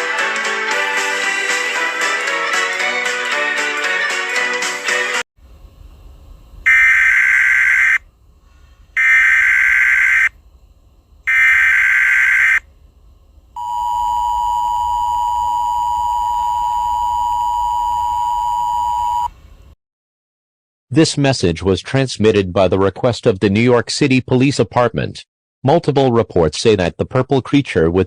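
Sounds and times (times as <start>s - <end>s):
song playing: 0.0s - 5.2s
data tone bursts: 6.7s - 8.0s, 9.0s - 10.3s, 11.3s - 12.6s
two-tone attention signal: 13.6s - 19.3s.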